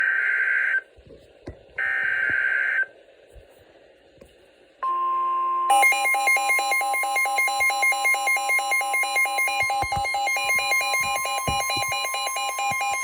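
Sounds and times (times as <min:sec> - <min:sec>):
warbling two-pitch alarm tone: 0:05.7 - 0:13.0.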